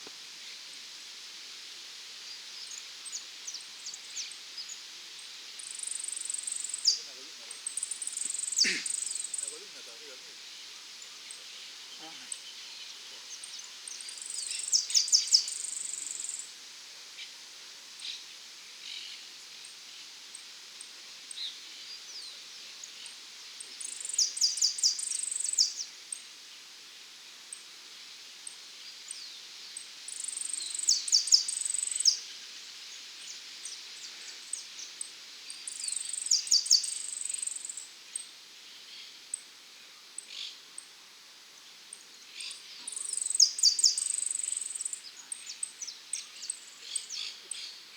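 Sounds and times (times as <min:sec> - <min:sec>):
insects ticking faintly: 0:05.6 - 0:10.4.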